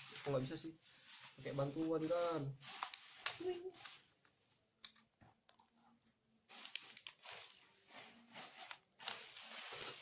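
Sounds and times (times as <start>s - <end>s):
plastic scraping and crackling: 6.5s - 10.0s.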